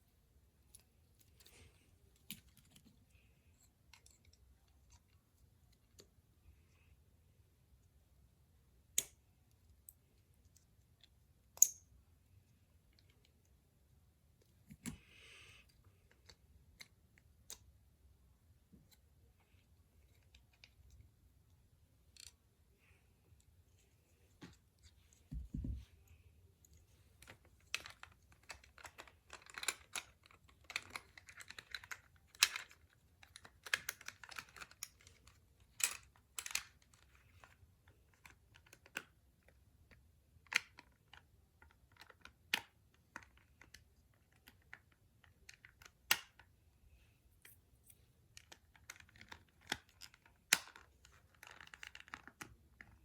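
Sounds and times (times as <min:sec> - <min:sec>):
plastic toy parts clicking: 0:27.2 - 0:46.5, 0:48.3 - 0:53.0.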